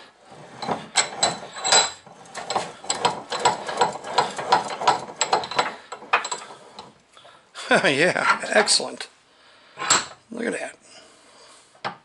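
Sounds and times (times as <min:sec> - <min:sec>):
bench vise clicking and clanking: 0:00.3 - 0:07.0, 0:09.8 - 0:10.2.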